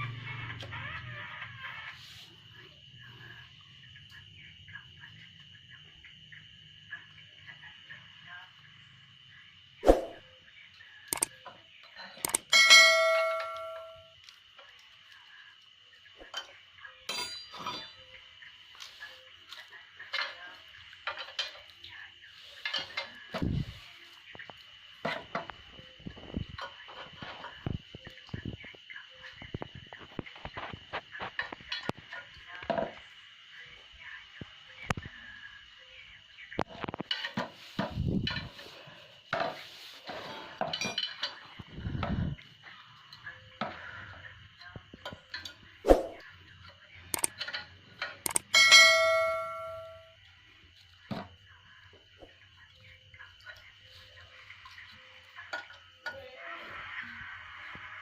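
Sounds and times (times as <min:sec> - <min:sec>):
faint steady high tone: 0:11.9 - 0:14.2, 0:48.3 - 0:50.2
metal tools clanking: 0:12.3 - 0:14.0.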